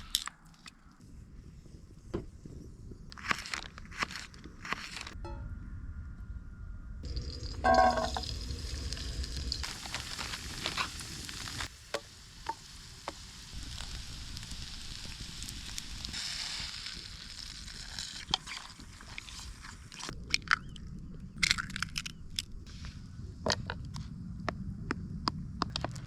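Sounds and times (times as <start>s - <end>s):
food sizzling: 7.0s - 18.5s.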